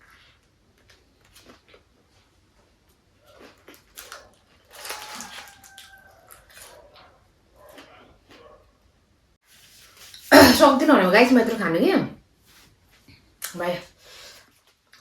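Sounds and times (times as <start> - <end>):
crunching and chewing food: 0.0 - 8.9, 12.6 - 15.0
dogs barking outside: 6.2 - 8.9.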